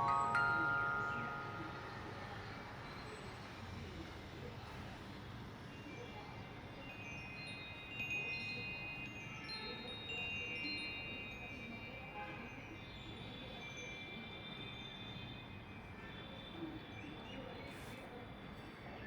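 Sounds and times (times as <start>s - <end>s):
high metallic chiming notes: 0.0s - 3.3s.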